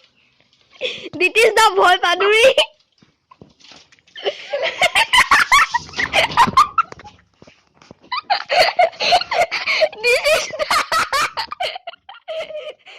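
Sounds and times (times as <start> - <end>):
people laughing and giggling: 4.2 - 7.2, 8.0 - 12.9.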